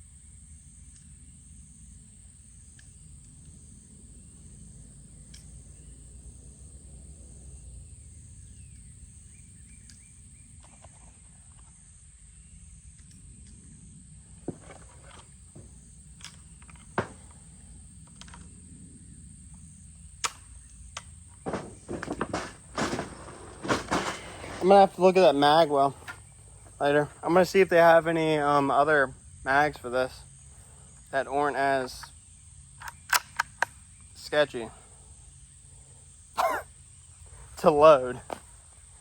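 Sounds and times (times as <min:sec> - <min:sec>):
high insect buzz: 0:00.0 - 0:39.0
metallic clicks loading rifle rounds: 0:32.8 - 0:33.8.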